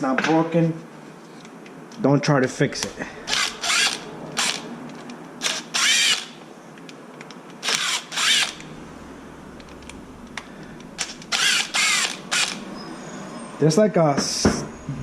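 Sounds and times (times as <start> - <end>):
electric drill whining in bursts: 3.2 - 4.7, 5.4 - 6.4, 7.6 - 13.2.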